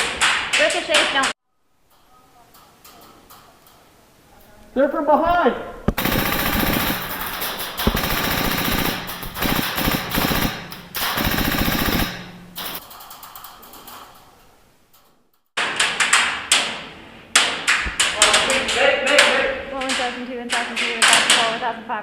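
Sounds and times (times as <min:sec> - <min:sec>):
airsoft gun full-auto bursts: 0:05.9 - 0:12.8.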